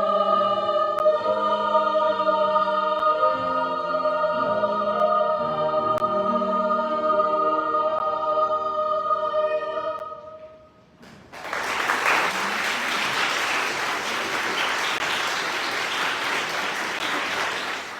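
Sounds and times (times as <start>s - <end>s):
children's choir singing: 0.0s - 10.5s, 11.5s - 17.9s
audience applause: 11.3s - 17.9s.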